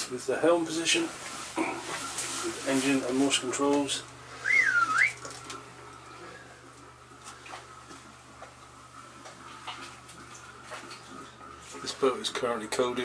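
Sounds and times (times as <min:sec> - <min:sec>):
steady low hum: 0:00.0 - 0:13.0
faint ticks and light knocks: 0:06.7 - 0:11.5.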